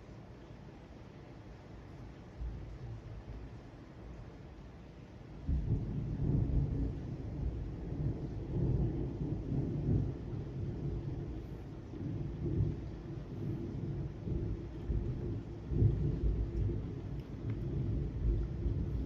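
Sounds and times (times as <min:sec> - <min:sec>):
thunder clap and rumble: 0:05.4 - 0:19.0.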